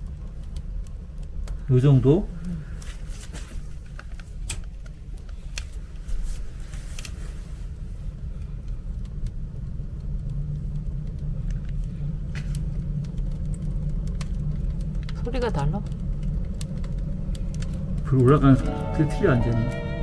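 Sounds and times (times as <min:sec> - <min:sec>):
burning wood crackling: 0:00.0 - 0:20.0
wood stove draft roar: 0:00.0 - 0:20.0.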